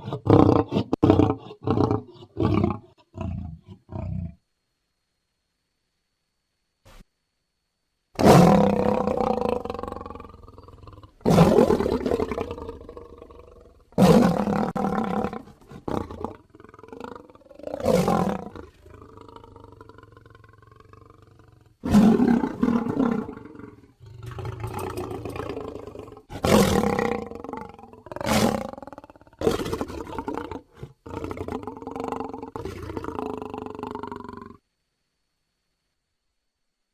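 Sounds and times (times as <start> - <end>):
dinosaur roaring: 8.2 - 34.6.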